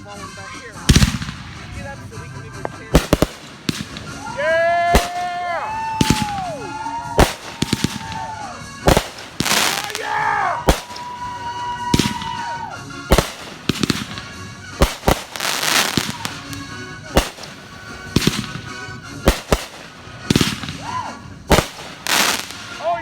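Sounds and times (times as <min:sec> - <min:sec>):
firework crackling: 0:00.0 - 0:23.0
firework whistling: 0:00.6 - 0:23.0
firework bangs: 0:00.7 - 0:23.0.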